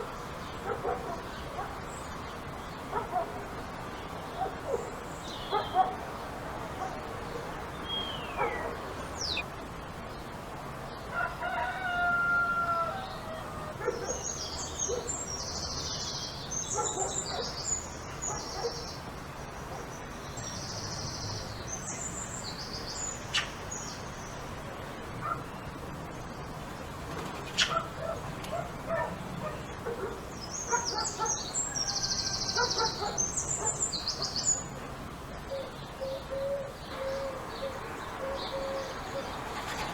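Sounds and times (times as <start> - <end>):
small birds chirping: 6.8 - 9.5, 14.0 - 24.6, 25.2 - 34.8
rooster crowing: 11.1 - 13.8, 31.6 - 32.8.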